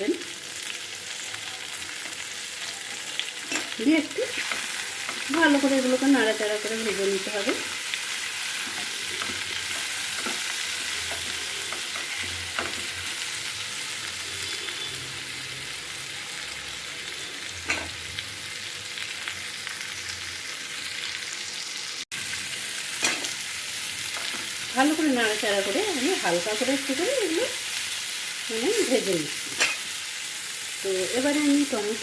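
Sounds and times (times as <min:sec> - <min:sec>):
vegetables sizzling in a pan: 0:00.0 - 0:32.0
spoon scraping a pan: 0:01.9 - 0:05.7, 0:06.8 - 0:13.2, 0:17.6 - 0:18.0, 0:23.0 - 0:23.4, 0:29.4 - 0:30.0.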